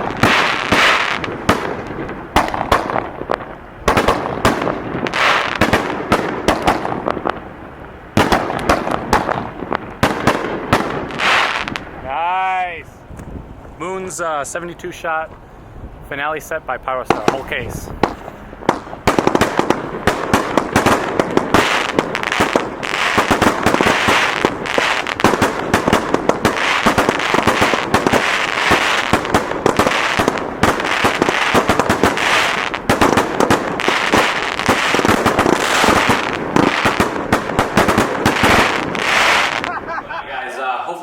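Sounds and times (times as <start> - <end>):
firework launch thumps: 17.0 - 39.7
firework shell breaks crackling: 17.0 - 39.8.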